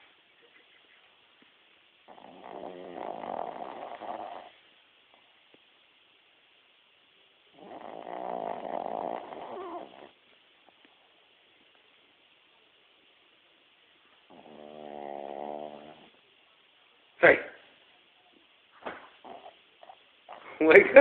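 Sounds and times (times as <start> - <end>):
dog snoring: 2.0 - 4.6, 7.5 - 10.2, 14.2 - 16.2, 19.1 - 20.5.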